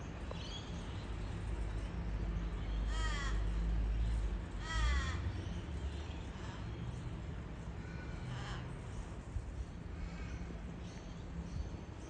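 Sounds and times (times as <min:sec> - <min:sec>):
crow cawing: 0:04.6 - 0:05.2.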